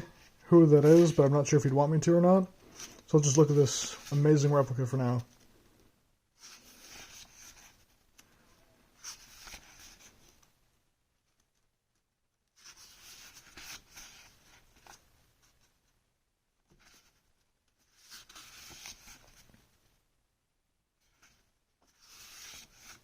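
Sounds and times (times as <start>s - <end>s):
paper pages rustling: 0.2s - 1.7s, 2.6s - 5.5s, 6.4s - 8.4s, 9.0s - 10.5s, 12.5s - 16.0s, 16.7s - 19.8s, 21.0s - 23.0s.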